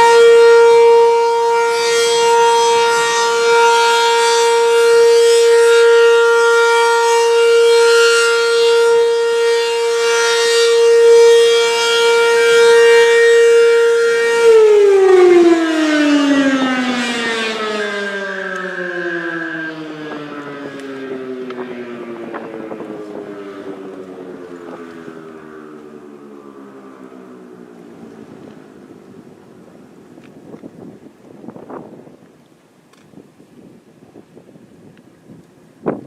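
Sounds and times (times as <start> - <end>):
warning siren steady tone: 0.0 - 32.2.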